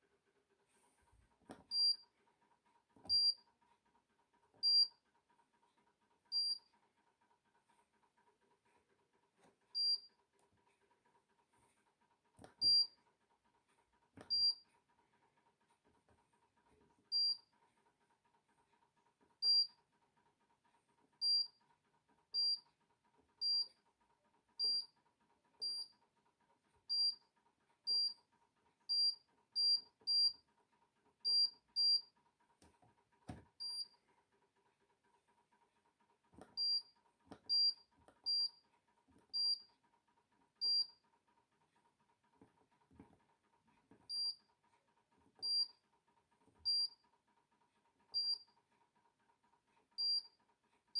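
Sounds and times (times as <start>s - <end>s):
tumble dryer control panel beeps: 1.7s - 2.0s, 3.0s - 3.4s, 4.6s - 4.9s, 6.3s - 6.7s, 9.8s - 10.1s, 12.6s - 13.0s, 14.2s - 14.6s, 17.1s - 17.4s, 19.4s - 19.8s, 21.2s - 21.6s, 22.4s - 22.6s, 23.4s - 23.8s, 24.6s - 24.9s, 25.6s - 25.9s, 26.9s - 27.2s, 27.9s - 28.2s, 28.9s - 30.4s, 31.2s - 32.1s, 33.6s - 34.0s, 36.5s - 38.6s, 39.3s - 39.7s, 40.6s - 41.0s, 44.1s - 44.4s, 45.4s - 45.8s, 46.6s - 47.0s, 48.2s - 48.5s, 50.0s - 50.4s.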